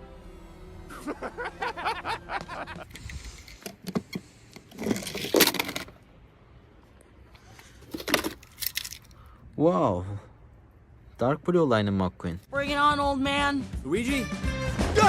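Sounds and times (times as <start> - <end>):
toy cars clicking and clattering: 4.6 - 6.0, 7.9 - 9.2.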